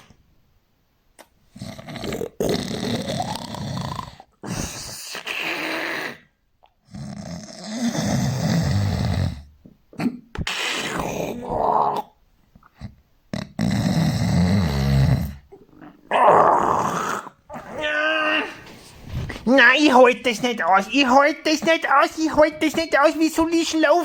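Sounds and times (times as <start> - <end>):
heavy snoring: 1.5 - 6.2, 6.9 - 9.5, 13.3 - 17.4.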